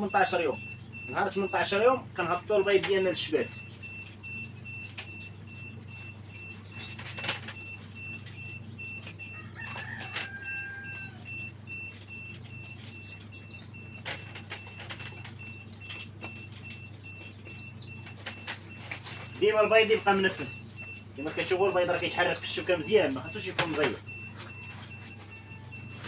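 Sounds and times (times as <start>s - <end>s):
rooster crowing: 9.3s - 11.4s, 24.7s - 26.0s.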